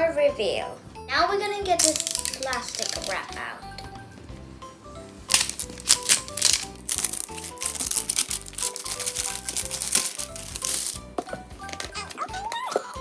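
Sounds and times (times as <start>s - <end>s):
background music with plucked notes: 0.0s - 13.0s
plastic wrap crinkling: 1.8s - 3.3s, 5.3s - 12.2s.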